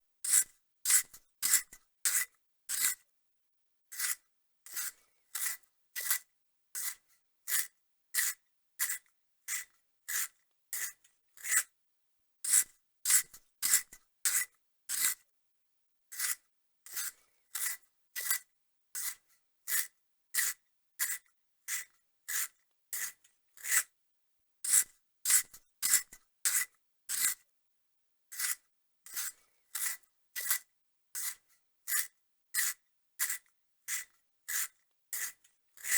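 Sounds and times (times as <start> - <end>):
pencil sharpener rasping: 0.3 - 3.0, 6.8 - 11.7, 12.5 - 15.2, 19.0 - 23.9, 24.7 - 27.4, 28.3 - 30.6, 31.2 - 35.9.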